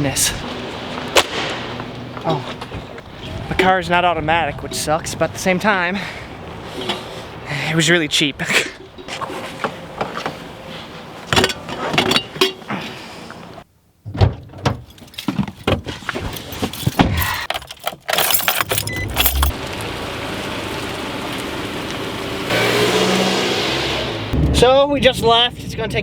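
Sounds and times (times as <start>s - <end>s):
car road noise: 0.1s - 3.6s, 18.2s - 25.1s
handling clicks and knocks: 14.6s - 19.8s
keys jangling: 16.3s - 19.6s.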